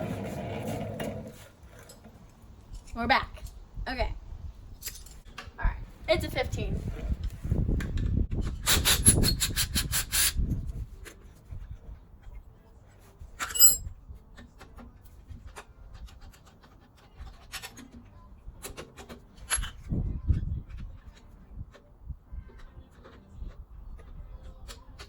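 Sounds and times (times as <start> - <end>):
metal tools clinking and knocking: 4.8 - 5.3, 13.4 - 13.9.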